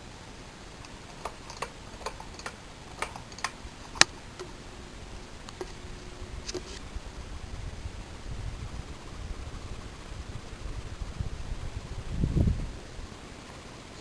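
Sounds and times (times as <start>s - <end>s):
ceiling fan whirring: 0.0s - 14.0s
faint motor hum: 0.0s - 14.0s
sharp ticks: 0.8s - 4.6s.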